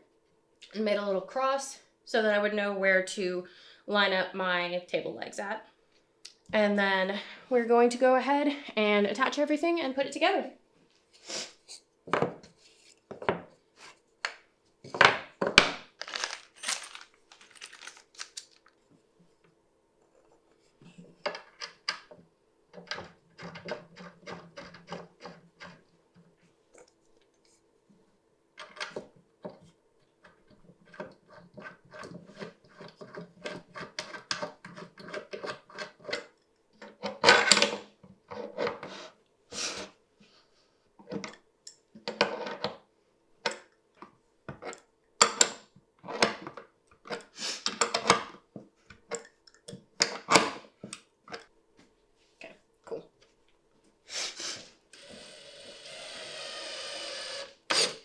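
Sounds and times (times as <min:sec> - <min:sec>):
drill driving a screw: 0:55.0 - 0:58.0.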